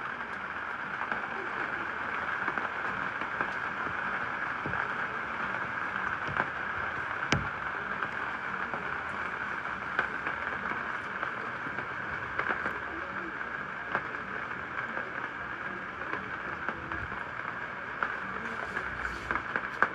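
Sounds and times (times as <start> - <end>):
rain hissing: 0.0 - 19.9.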